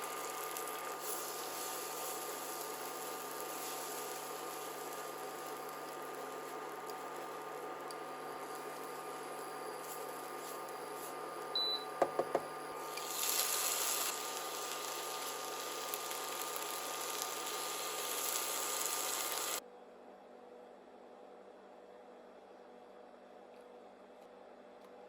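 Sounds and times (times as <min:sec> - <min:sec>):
kitchen appliance humming: 0:00.0 - 0:19.6
short high beep: 0:11.6 - 0:11.9.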